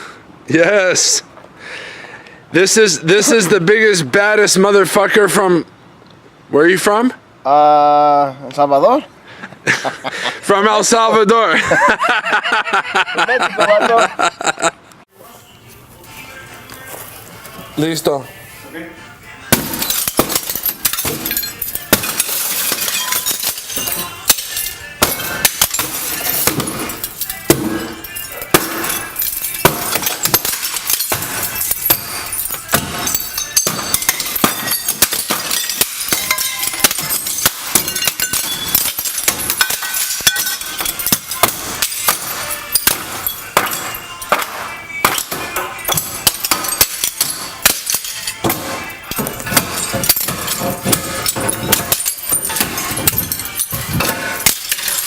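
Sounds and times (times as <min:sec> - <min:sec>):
concrete chunks clattering: 0:19.5 - 0:55.0.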